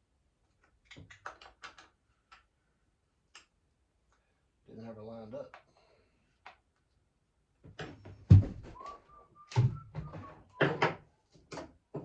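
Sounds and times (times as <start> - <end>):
sharp knocks and thuds: 7.7 - 8.8
faint thin whistle-like tone: 8.8 - 10.8.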